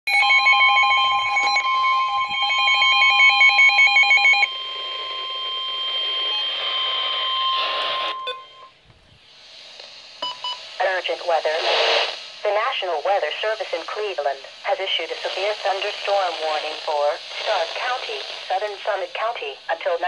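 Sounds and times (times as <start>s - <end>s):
steady high beep: 0.1s - 8.7s, 10.2s - 10.6s
warbling electronic tone: 0.1s - 8.7s
hiss: 9.1s - 20.0s.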